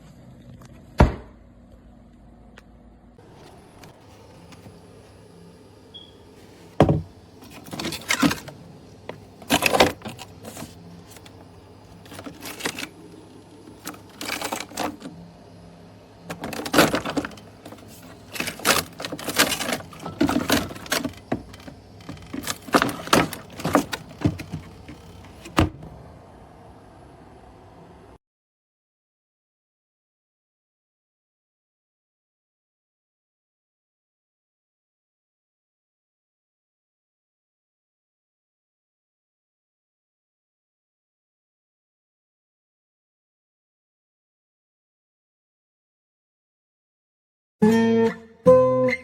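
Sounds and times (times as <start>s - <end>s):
hard objects clicking and rattling: 6.8s - 13.0s, 16.3s - 25.8s.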